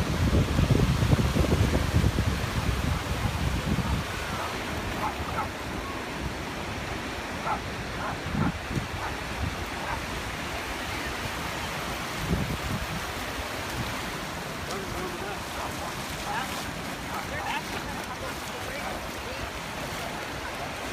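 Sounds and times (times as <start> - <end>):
ocean surf: 0.0 - 20.9
wind buffeting microphone: 0.0 - 20.9
distant dog barking: 4.3 - 5.6, 7.4 - 10.1.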